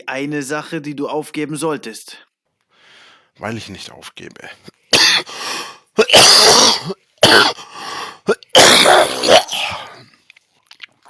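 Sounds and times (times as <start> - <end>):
man coughing: 4.9 - 5.4, 6.0 - 10.0.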